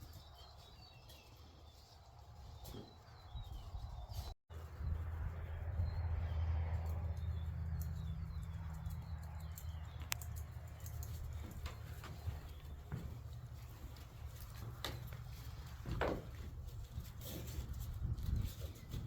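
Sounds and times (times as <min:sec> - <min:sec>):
sharp clicks: 0:08.7 - 0:11.8.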